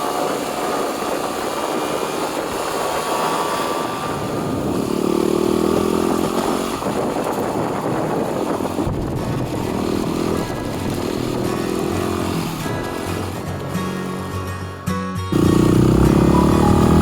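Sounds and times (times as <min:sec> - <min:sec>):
motorcycle engine running: 0:00.0 - 0:17.0
wind on microphone: 0:03.6 - 0:14.0.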